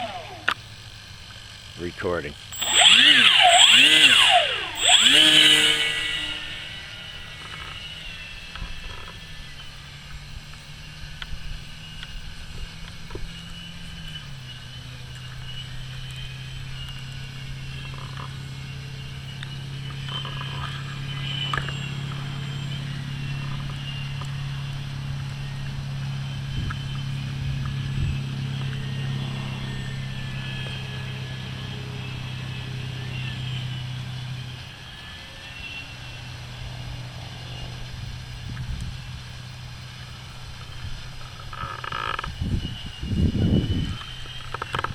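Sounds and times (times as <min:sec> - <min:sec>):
high whine: 0:00.0 - 0:44.9
model plane motor droning: 0:00.0 - 0:44.9.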